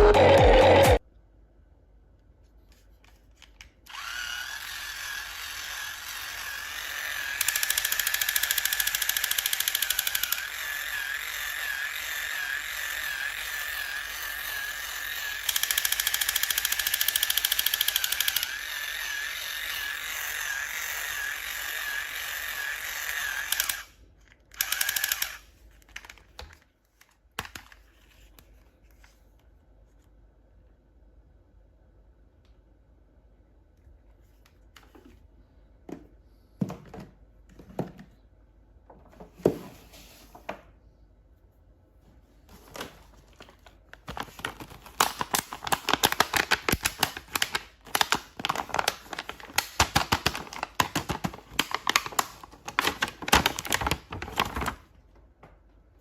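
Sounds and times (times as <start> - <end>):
small electric motor whirring: 3.9 - 25.5.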